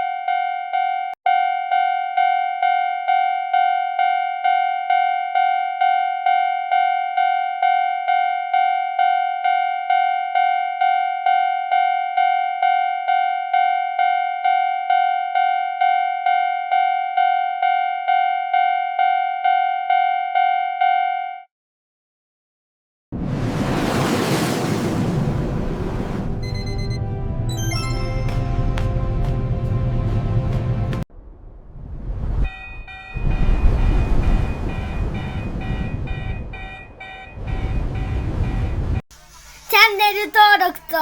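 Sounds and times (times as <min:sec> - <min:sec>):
railroad crossing warning bell: 0:00.0 - 0:21.4, 0:32.6 - 0:38.7.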